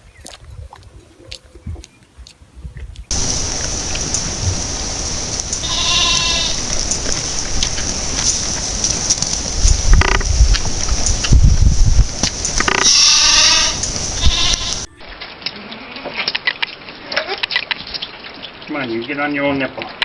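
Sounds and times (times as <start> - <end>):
steady hiss: 3.1 - 17.0
goat bleating: 5.6 - 6.7, 12.8 - 14.9, 15.5 - 16.3.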